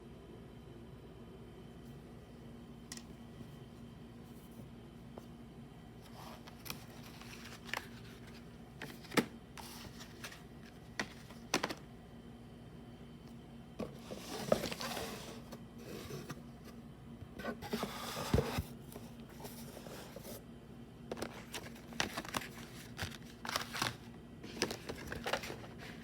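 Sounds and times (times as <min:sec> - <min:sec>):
faint steady hum: 0:00.0 - 0:26.0
packaging rustling: 0:06.4 - 0:11.8, 0:21.1 - 0:26.0.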